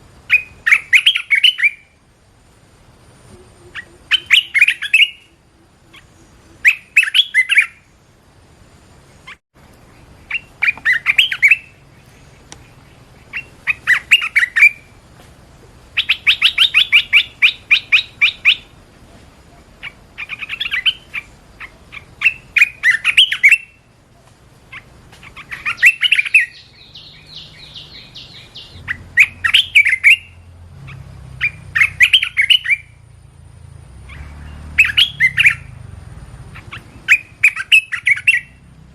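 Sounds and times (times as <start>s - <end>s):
bird singing whistled phrases: 0.3s - 2.0s, 3.3s - 7.9s, 10.3s - 11.8s, 13.3s - 15.0s, 16.0s - 18.7s, 19.8s - 23.8s, 24.7s - 33.0s, 34.1s - 35.7s, 36.6s - 38.6s.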